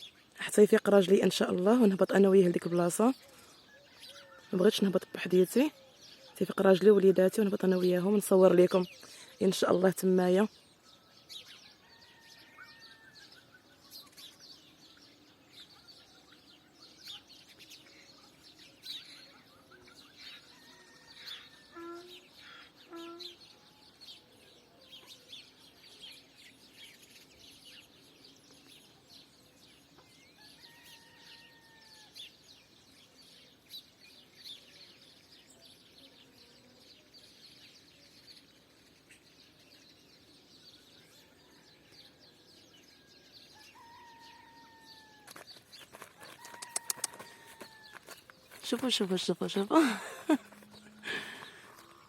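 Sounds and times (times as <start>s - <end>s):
small birds chirping: 0.0s - 52.0s
distant rooster crowing: 11.7s - 13.5s, 30.4s - 32.2s, 43.3s - 45.4s, 46.1s - 48.2s.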